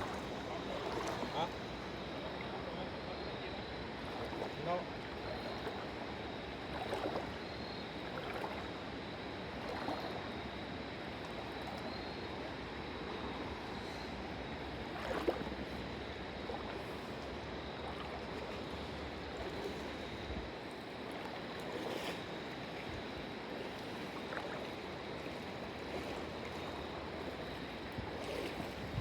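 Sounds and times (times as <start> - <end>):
water rushing: 0.0 - 3.1.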